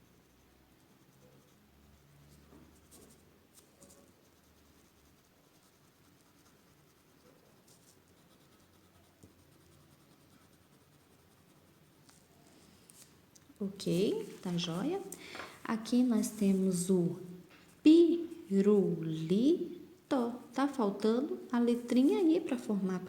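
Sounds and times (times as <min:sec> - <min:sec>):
pencil scratching on paper: 0:00.1 - 0:17.0.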